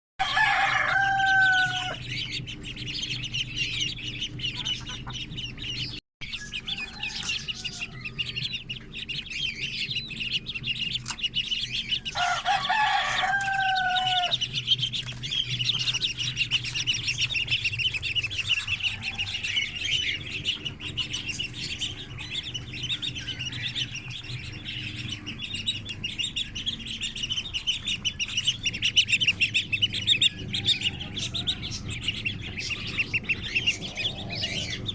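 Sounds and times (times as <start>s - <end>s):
rooster crowing: 0.2s - 2.1s, 6.5s - 8.4s, 12.1s - 14.4s, 18.6s - 20.2s, 30.6s - 32.2s
parrots chirping and chattering: 0.2s - 34.9s
steady low hum: 0.2s - 34.9s.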